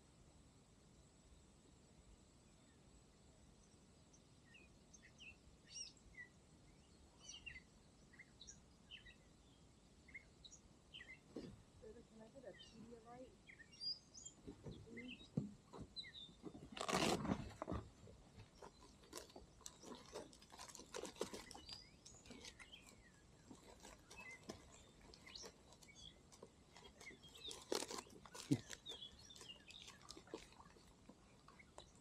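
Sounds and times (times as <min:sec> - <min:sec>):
small birds chirping: 0:03.5 - 0:32.0.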